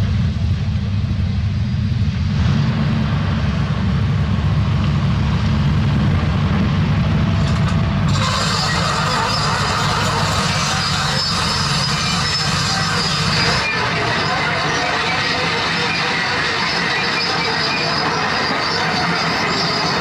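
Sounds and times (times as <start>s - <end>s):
diesel machinery rumbling: 0.0s - 20.0s.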